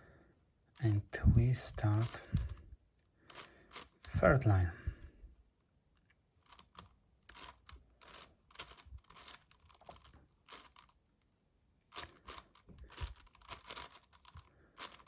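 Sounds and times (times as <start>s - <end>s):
puzzle cube plastic clicks: 3.3s - 4.2s, 6.4s - 11.0s, 11.9s - 15.0s.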